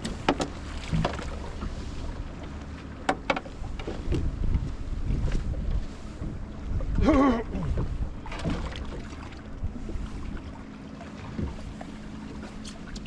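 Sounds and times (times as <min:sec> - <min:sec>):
water around a boat: 0:00.0 - 0:13.0
wind on microphone: 0:03.5 - 0:08.9.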